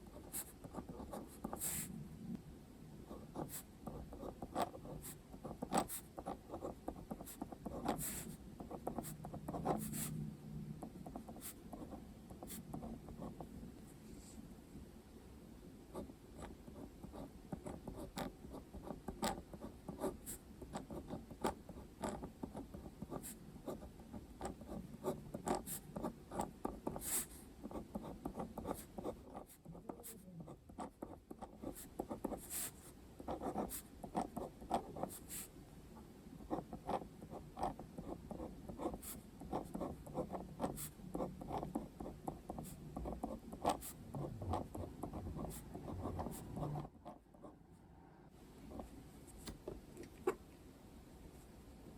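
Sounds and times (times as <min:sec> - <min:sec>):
pen scratching on paper: 0:00.0 - 0:01.9, 0:03.1 - 0:10.2, 0:10.8 - 0:13.5, 0:15.9 - 0:35.6, 0:36.4 - 0:47.6.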